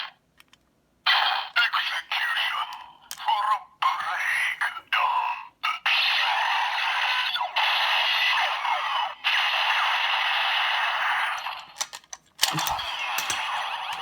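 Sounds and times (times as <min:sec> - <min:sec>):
toy clicks: 0:11.3 - 0:14.0.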